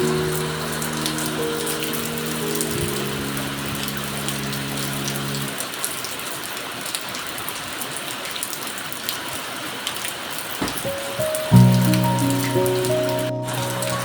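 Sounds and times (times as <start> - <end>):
steady rain falling: 0.0 - 14.0
raindrops ticking: 9.9 - 14.0.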